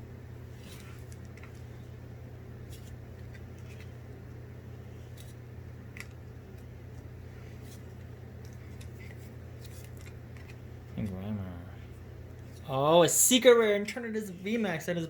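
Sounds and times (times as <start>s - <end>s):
steady low hum: 0.0s - 15.0s
trading cards sliding and ticking: 0.5s - 2.0s, 2.6s - 11.2s.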